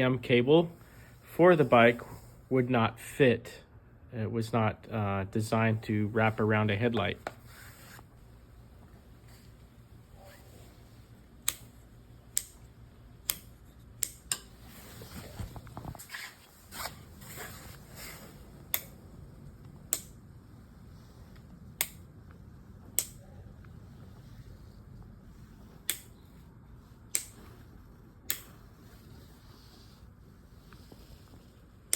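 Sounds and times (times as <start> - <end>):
rustling handling noise: 13.6 - 18.6
sharp single clicks: 27.1 - 27.4.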